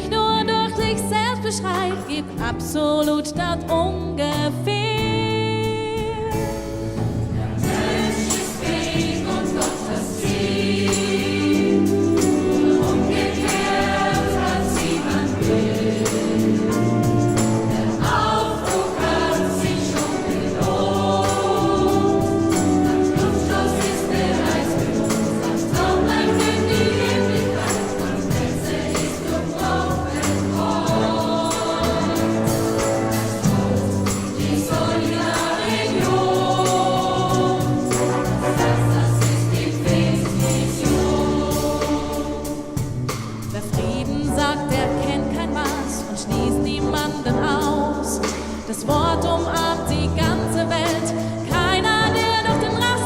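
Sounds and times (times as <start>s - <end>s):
choir singing with accompaniment: 6.5s - 53.0s.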